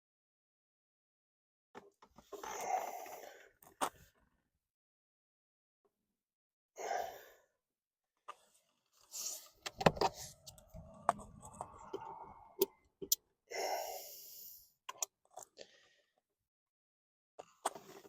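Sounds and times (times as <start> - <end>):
man breathing out hard: 13.5 - 14.6.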